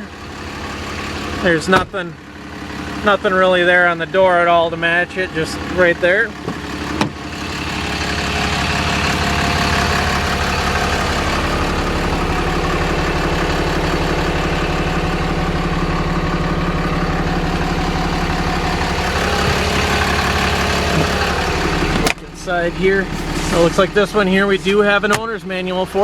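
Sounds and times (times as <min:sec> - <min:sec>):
truck engine idling: 0:00.0 - 0:26.0.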